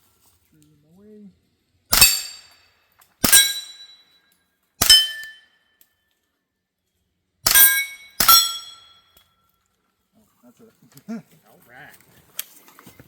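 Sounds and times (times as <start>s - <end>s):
suppressed gunshots: 1.9s - 2.5s
sharp crack with metallic ring: 1.9s - 4.2s, 4.8s - 5.9s, 7.4s - 9.3s.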